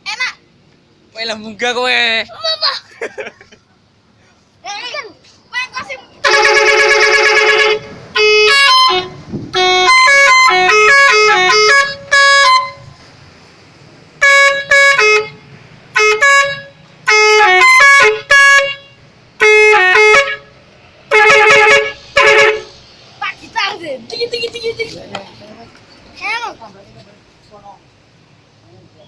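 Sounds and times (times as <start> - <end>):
multi-tone horn melody: 6.2 - 13.1, 14.2 - 22.8.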